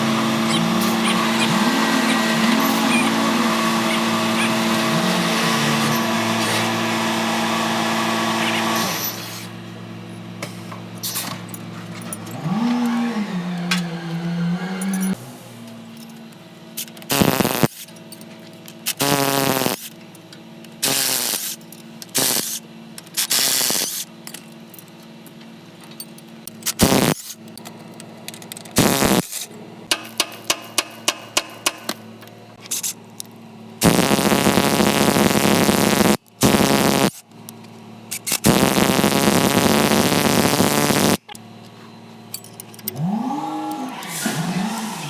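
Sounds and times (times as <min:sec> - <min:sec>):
power tool bursts: 0:00.0 - 0:07.1, 0:17.1 - 0:17.8, 0:18.9 - 0:19.9, 0:20.8 - 0:21.6, 0:22.2 - 0:22.6, 0:23.2 - 0:24.1, 0:26.6 - 0:27.4, 0:28.8 - 0:30.8, 0:33.8 - 0:37.3, 0:38.2 - 0:41.3, 0:42.9 - 0:45.0.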